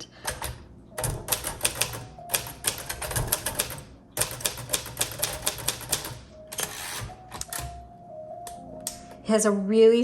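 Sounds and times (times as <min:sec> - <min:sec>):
typewriter keys clicking: 0:00.2 - 0:07.8.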